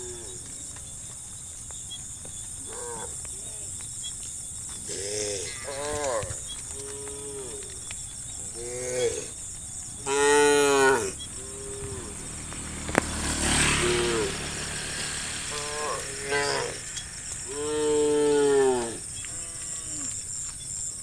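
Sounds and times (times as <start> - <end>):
cows mooing: 10.0 - 20.2.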